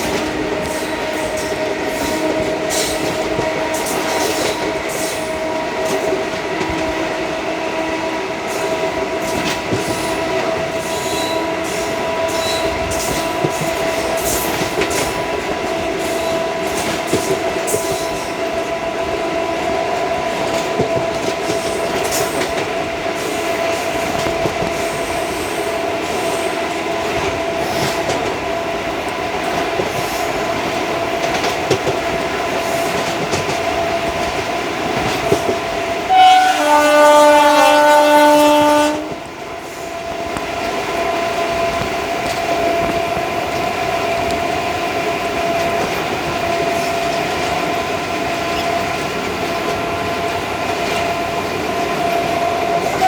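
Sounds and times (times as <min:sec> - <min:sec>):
locomotive horn blast: 0:00.0 - 0:06.0, 0:36.0 - 0:39.3
rail-joint clicks: 0:00.0 - 0:53.0
train coach rumbling on track: 0:00.0 - 0:53.0.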